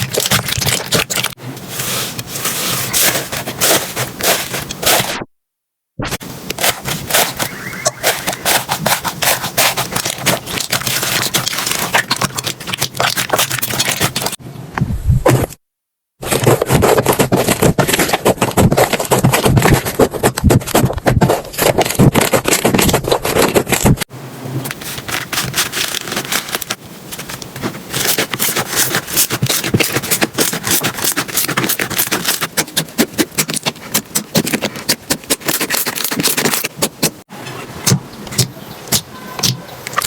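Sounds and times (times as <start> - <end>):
slime crackling and popping: 0.0 - 1.4, 6.6 - 14.4.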